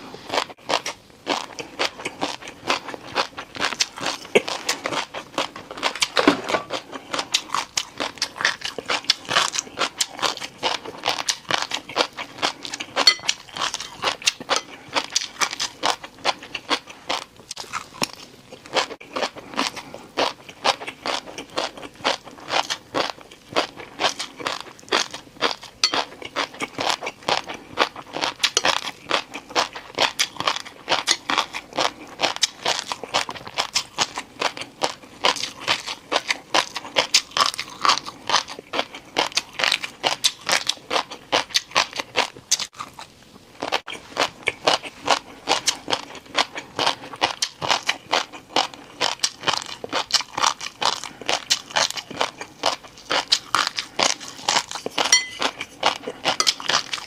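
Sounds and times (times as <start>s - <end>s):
crunching crispy noodles: 0.0s - 57.0s.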